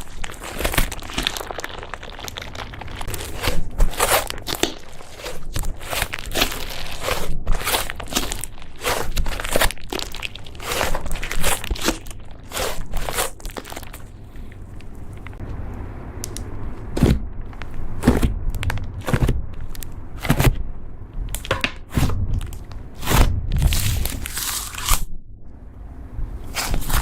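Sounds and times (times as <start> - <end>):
slime squishing and popping: 0.0 - 14.1.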